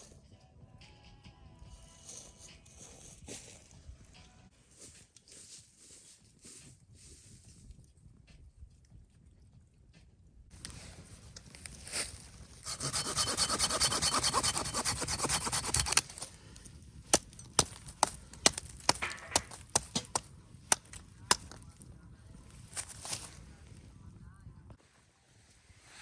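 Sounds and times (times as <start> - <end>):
hand saw rasping through wood: 12.6 - 16.4.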